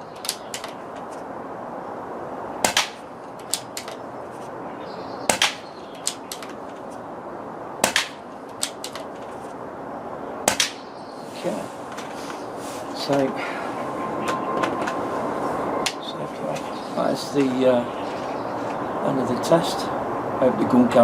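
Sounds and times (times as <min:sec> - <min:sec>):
air rifle shots: 0:02.6 - 0:04.0, 0:05.3 - 0:06.6, 0:07.8 - 0:09.0, 0:10.4 - 0:10.8.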